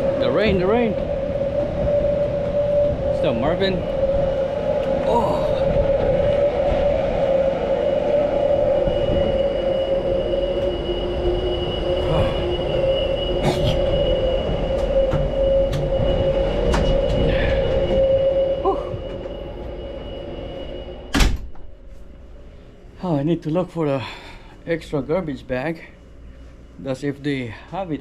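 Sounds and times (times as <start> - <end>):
wind noise: 0.0 - 21.6
boat machinery drone: 0.0 - 23.0
door shutting: 13.4 - 17.7, 21.1 - 21.7.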